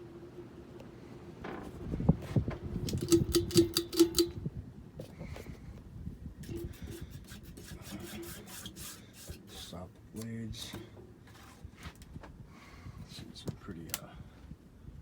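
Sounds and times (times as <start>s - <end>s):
ceiling fan motor hum: 0.0s - 15.0s
fan clicking and knocking: 1.4s - 5.5s.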